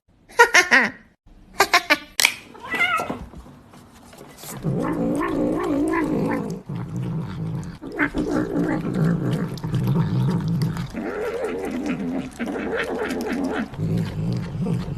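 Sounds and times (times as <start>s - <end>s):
cat yowling: 2.5s - 3.2s
cat growling: 4.4s - 14.9s.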